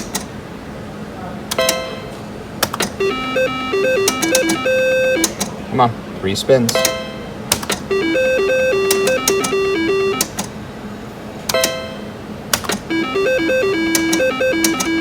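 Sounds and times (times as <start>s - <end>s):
slot machine reel clicks: 1.5s - 5.6s, 6.7s - 10.6s, 11.5s - 15.0s
slot machine beep melody: 3.0s - 5.4s, 7.9s - 10.3s, 12.9s - 15.0s.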